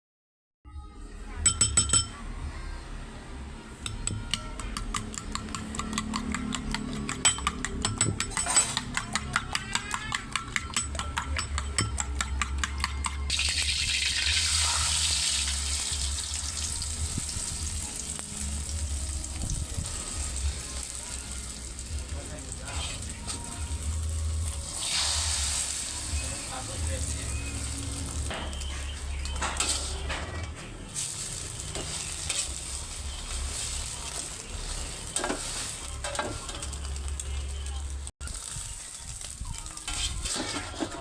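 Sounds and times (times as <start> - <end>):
eggs sizzling in hot oil: 3.9 - 12.7, 13.3 - 30.1, 30.9 - 41.0
utensil clinking against bowl: 3.9 - 13.3.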